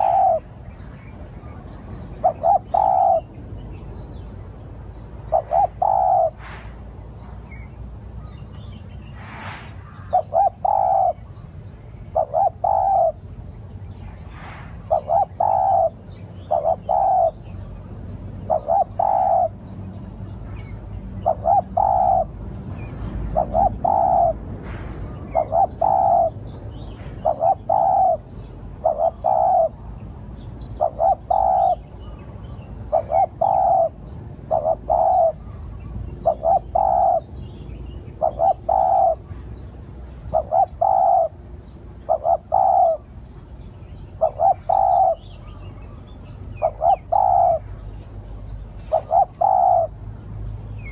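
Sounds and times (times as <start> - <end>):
dove cooing: 0.0 - 0.5, 2.2 - 3.4, 5.2 - 6.6, 9.4 - 11.3, 12.1 - 13.3, 14.4 - 17.4, 18.4 - 19.5, 20.4 - 22.4, 23.3 - 24.4, 25.3 - 26.4, 27.1 - 29.8, 30.7 - 31.9, 32.9 - 37.3, 38.1 - 43.2, 44.1 - 45.6, 46.5 - 50.0
small bird chirping: 7.2 - 9.2, 9.8 - 24.4, 25.1 - 50.9.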